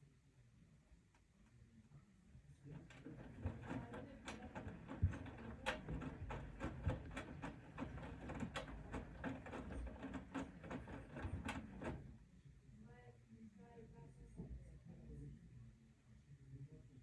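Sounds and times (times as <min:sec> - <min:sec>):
washing machine tumbling: 0:02.7 - 0:12.2.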